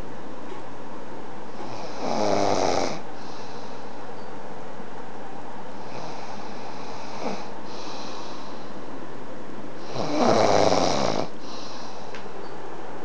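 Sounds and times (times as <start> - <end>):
loud snore: 1.6 - 3.1, 5.8 - 8.3, 9.8 - 11.7
soft breathing: 3.0 - 4.3, 5.7 - 9.0, 11.0 - 12.6.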